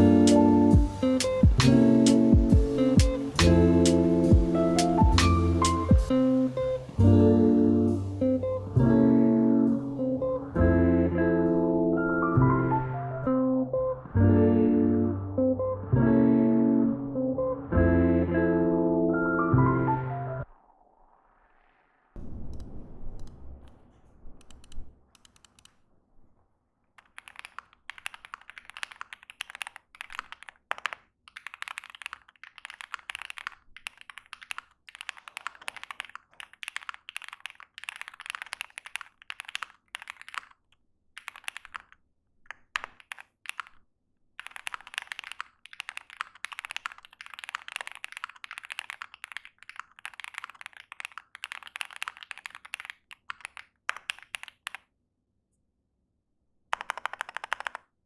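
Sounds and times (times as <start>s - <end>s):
mechanical keyboard typing: 22.2s - 25.8s, 27.0s - 43.8s, 44.4s - 54.8s, 56.8s - 57.9s.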